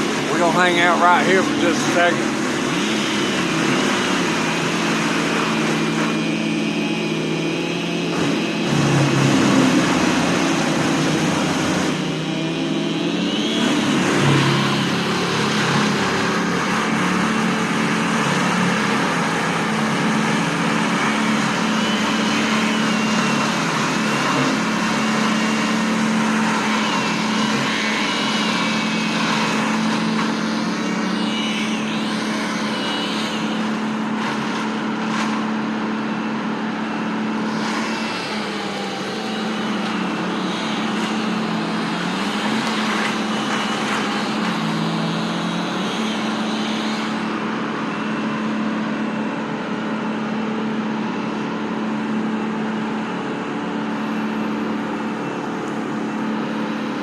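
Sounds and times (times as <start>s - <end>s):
large engine humming: 0.0s - 57.0s.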